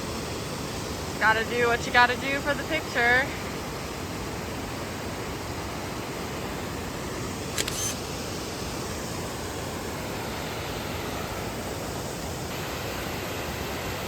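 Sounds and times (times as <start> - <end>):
waterfall rushing: 2.5 - 14.0
brief click: 7.5 - 8.0.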